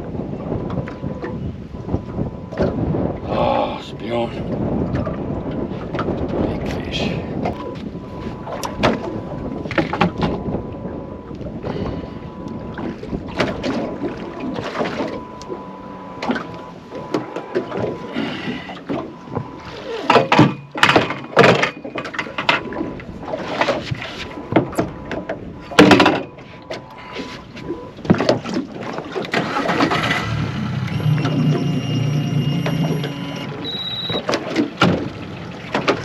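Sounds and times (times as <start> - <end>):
fish splashing in water: 11.6 - 24.9.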